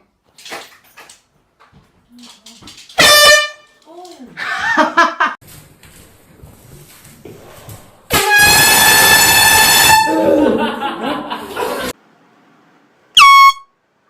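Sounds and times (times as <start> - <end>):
air horn blasting: 3.0 - 3.8, 8.1 - 10.3, 13.2 - 13.7.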